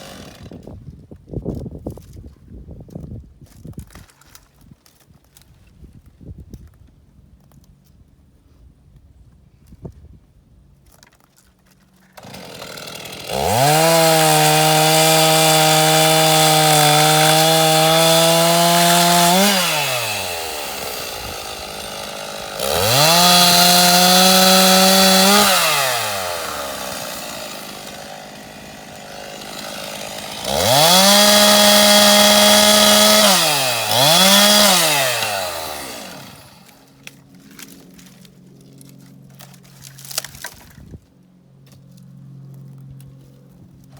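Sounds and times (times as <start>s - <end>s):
chainsaw cutting logs: 0.0s - 0.9s, 10.9s - 41.0s.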